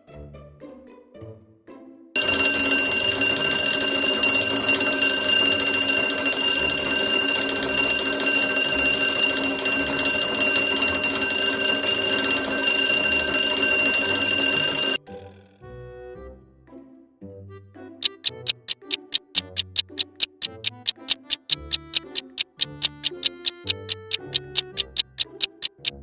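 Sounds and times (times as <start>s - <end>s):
alarm clock ringing: 2.2s - 15.0s, 18.0s - 26.0s.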